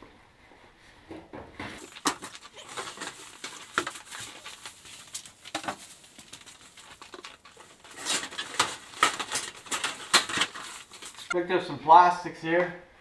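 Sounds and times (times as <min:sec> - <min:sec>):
car body parts knocking and rustling: 0:01.2 - 0:11.4.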